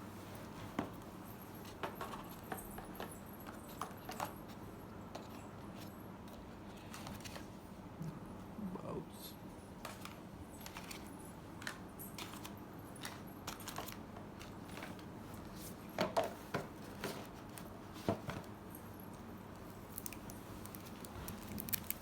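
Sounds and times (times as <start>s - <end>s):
hands handling boxes and packaging: 9.9s - 18.8s, 19.6s - 22.0s.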